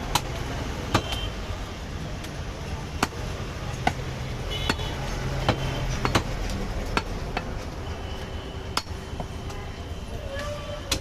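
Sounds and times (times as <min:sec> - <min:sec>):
cleaver chopping meat: 0:00.0 - 0:01.2, 0:02.2 - 0:04.1, 0:04.7 - 0:07.5.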